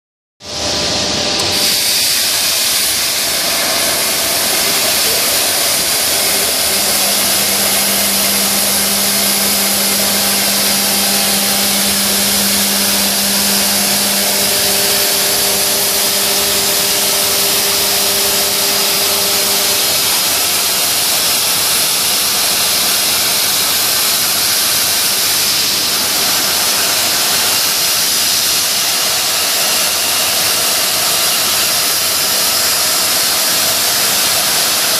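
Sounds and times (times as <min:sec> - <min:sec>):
cnc machine spindle whirring: 0:00.4 - 0:34.9
low hum: 0:02.5 - 0:22.3.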